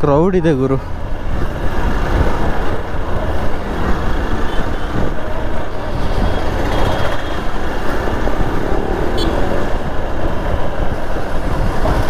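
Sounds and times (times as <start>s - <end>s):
road noise: 0.0s - 12.0s
wind on microphone: 0.8s - 12.0s
motorcycle engine: 2.5s - 11.4s.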